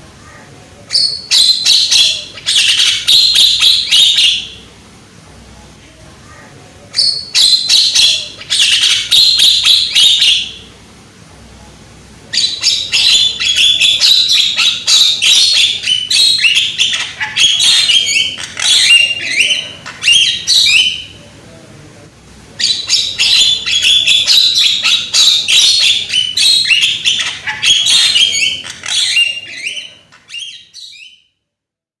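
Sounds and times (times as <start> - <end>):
myna harsh chattering calls: 0.3 - 4.7, 12.4 - 21.2, 22.6 - 30.8.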